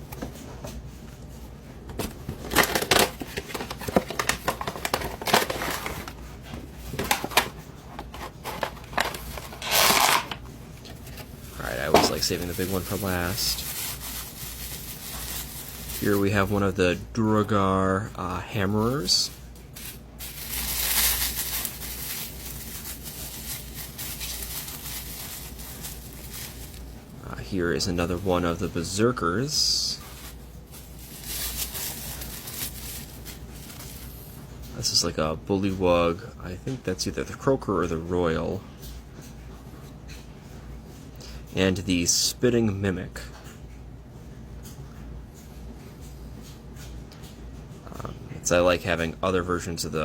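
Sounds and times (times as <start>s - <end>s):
packaging crinkling and rustling: 2.0s - 17.0s, 18.5s - 34.4s.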